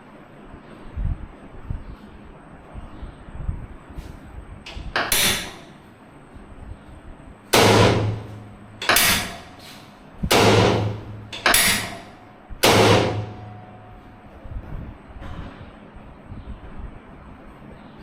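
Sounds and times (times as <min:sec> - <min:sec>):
loud knocks: 0:07.6 - 0:09.6, 0:10.2 - 0:14.1.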